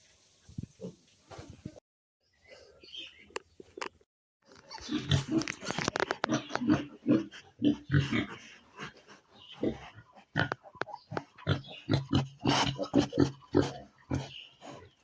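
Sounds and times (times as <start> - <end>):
pigs grunting: 4.6 - 15.0.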